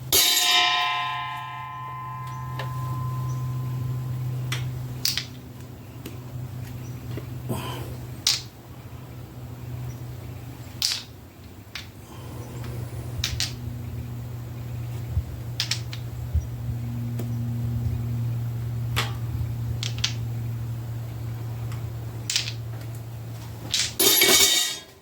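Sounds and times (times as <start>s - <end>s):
steady low hum: 0.0s - 25.0s
metal clatter: 23.7s - 25.0s.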